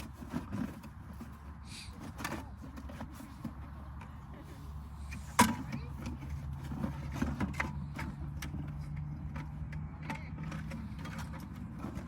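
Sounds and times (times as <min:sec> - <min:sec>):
low engine hum: 0:00.0 - 0:12.0.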